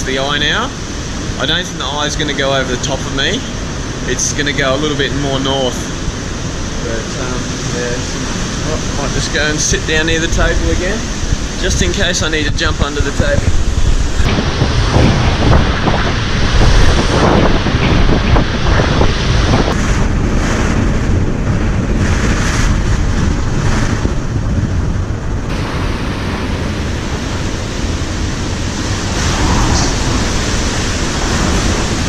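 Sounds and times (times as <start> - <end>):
strong wind gusting: 0.0 - 32.0
knocks and rattles: 14.2 - 19.8.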